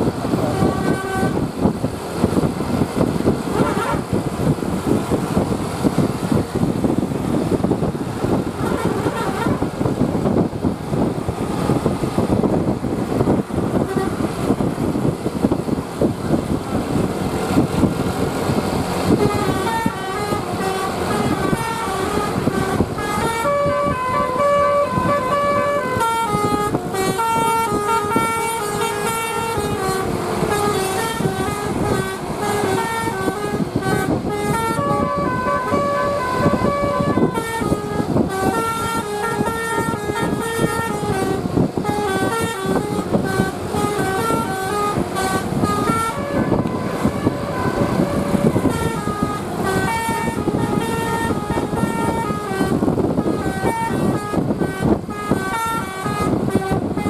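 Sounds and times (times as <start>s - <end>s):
vehicle noise rushing: 0.0s - 57.0s
musical air horn tune: 0.3s - 1.6s, 3.5s - 4.2s, 8.5s - 9.9s, 13.6s - 14.8s, 19.0s - 57.0s.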